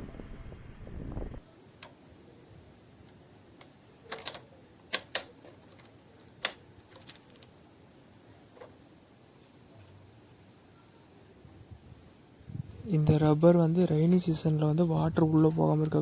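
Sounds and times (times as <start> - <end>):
small hard parts clicking: 3.0 - 7.6.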